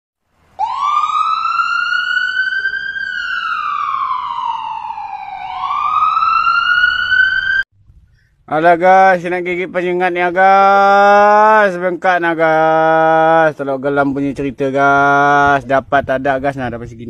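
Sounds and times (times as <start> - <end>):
siren wailing: 0.6 - 7.7.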